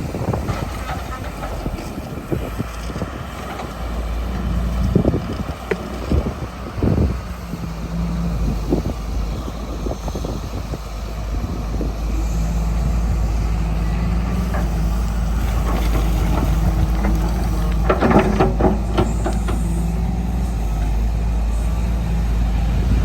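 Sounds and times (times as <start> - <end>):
excavator diesel engine running: 0.0 - 23.0
metal knocks and clanks: 15.4 - 19.9.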